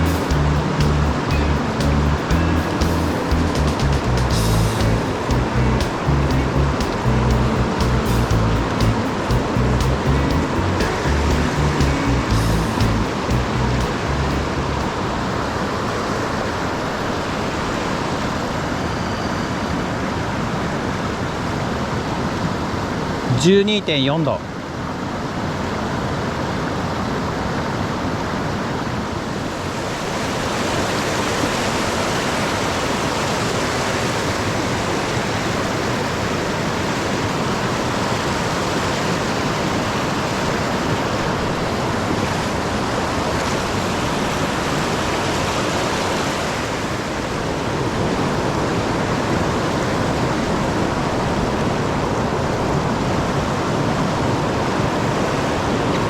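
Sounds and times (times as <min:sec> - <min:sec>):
river water rushing: 0:00.0 - 0:56.0.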